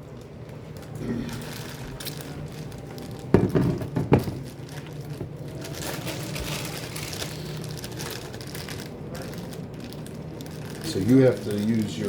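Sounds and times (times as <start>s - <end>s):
microwave humming: 0.0s - 12.0s
kitchenware knocks: 3.3s - 4.4s.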